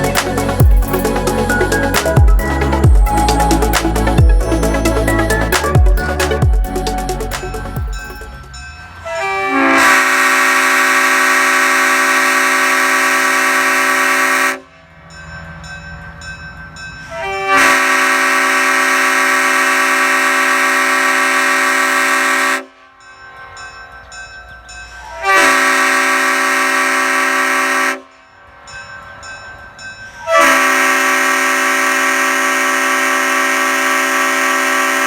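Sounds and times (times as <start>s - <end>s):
train horn blasts: 9.0s - 14.7s, 17.1s - 22.8s, 25.1s - 28.2s, 30.2s - 35.0s.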